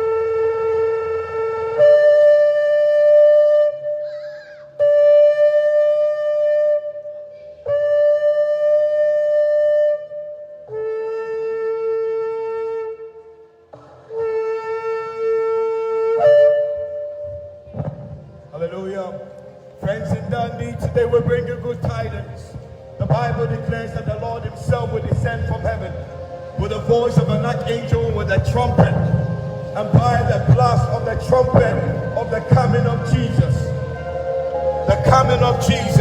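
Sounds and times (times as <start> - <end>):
ram's horn blasts: 14.1 - 36.0.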